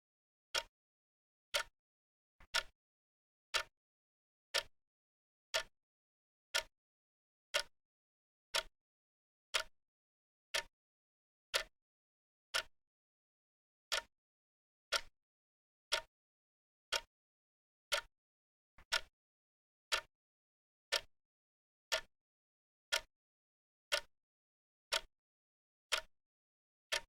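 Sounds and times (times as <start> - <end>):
wrist watch ticking: 3.5 - 3.7, 5.5 - 5.7, 25.9 - 26.1.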